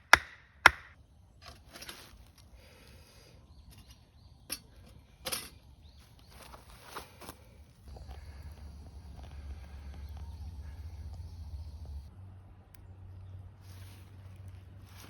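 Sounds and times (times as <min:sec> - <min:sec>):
axe chopping wood: 0:00.0 - 0:01.0
rustling and handling of wood: 0:01.2 - 0:12.0.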